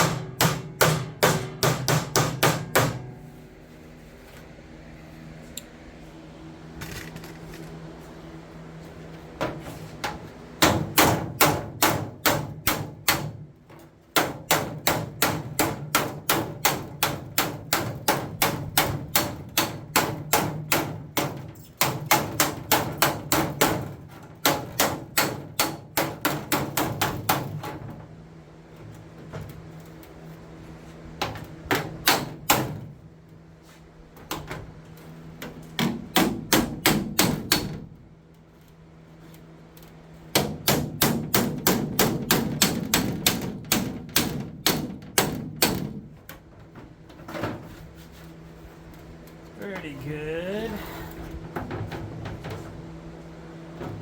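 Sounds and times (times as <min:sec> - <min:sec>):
hammer on metal panel: 0:00.0 - 0:03.2, 0:09.4 - 0:13.5, 0:14.1 - 0:27.8, 0:31.2 - 0:32.9, 0:35.8 - 0:37.9, 0:40.3 - 0:46.1.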